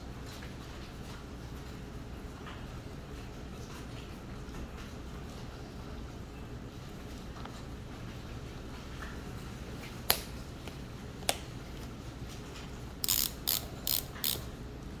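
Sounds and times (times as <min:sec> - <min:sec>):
lacing dial ratcheting clicks: 0:13.0 - 0:14.5.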